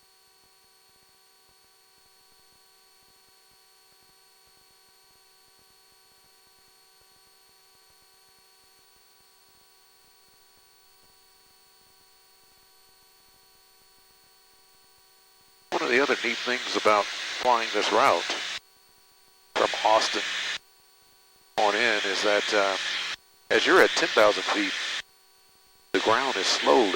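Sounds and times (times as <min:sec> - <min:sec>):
faint electrical hum and hiss: 0:15.8 - 0:18.6, 0:19.6 - 0:20.6, 0:21.6 - 0:26.9.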